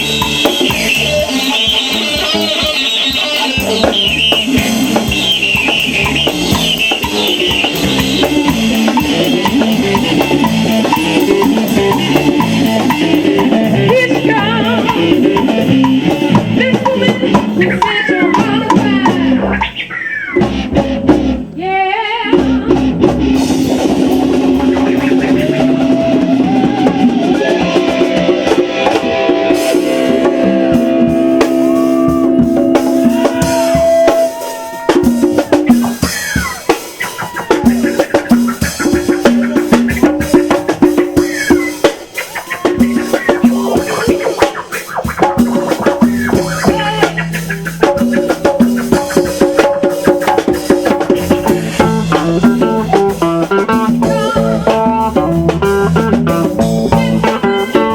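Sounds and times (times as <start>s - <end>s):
drum kit beat: 0.0s - 57.9s
sustained instrument notes: 23.4s - 36.2s.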